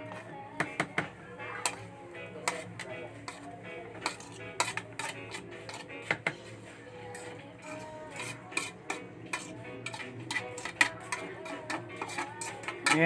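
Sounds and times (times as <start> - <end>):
utensil scraping against bowl: 2.4 - 6.1, 7.1 - 13.0.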